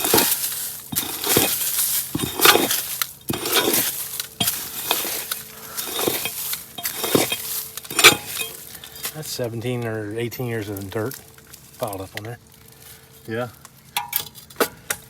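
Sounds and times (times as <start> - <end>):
scraping and crunching strokes: 0.0 - 9.6.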